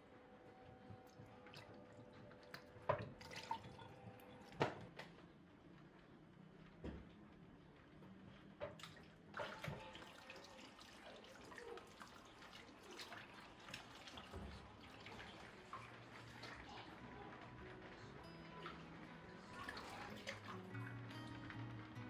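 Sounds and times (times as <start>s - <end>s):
running and dripping water: 0.8s - 5.1s, 8.6s - 22.0s.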